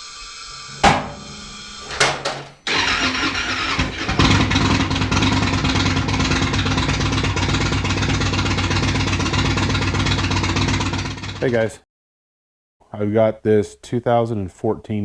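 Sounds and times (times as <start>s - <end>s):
engine starting and running: 0.0s - 11.5s.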